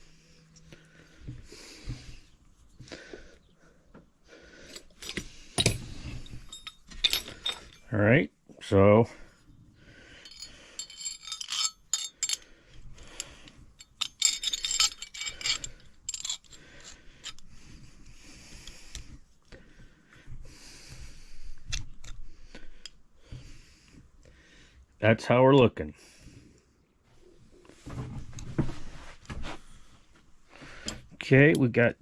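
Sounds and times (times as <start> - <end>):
steel parts clinking: 4.7 - 8.0, 10.2 - 17.4
scraping and rubbing: 10.2 - 12.4, 13.2 - 17.4.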